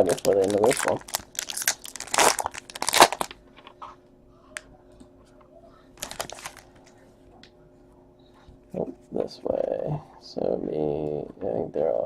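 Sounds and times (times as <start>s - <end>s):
foil wrapper crinkling: 0.0s - 3.4s, 6.0s - 6.8s
faint steady hum: 0.0s - 12.0s.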